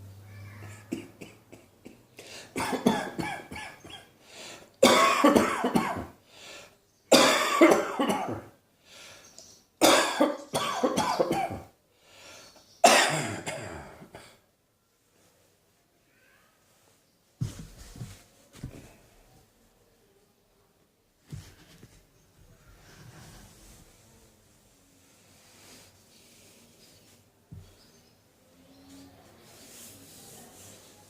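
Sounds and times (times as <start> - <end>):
person coughing hard: 0.8 - 4.1, 4.8 - 6.2, 7.1 - 8.5, 9.8 - 11.7, 12.8 - 14.4.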